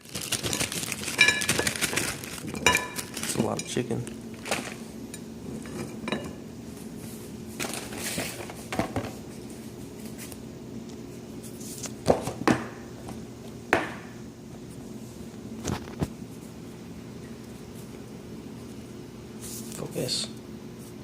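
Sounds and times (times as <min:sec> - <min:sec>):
steady low hum: 0:00.0 - 0:21.0
dishes and cutlery clinking: 0:00.5 - 0:03.9, 0:04.6 - 0:06.4.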